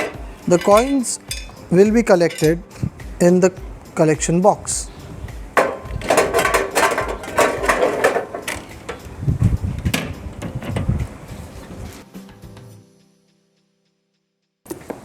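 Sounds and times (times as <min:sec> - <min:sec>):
metal clicking and rattling: 0:00.0 - 0:03.6, 0:04.8 - 0:12.0.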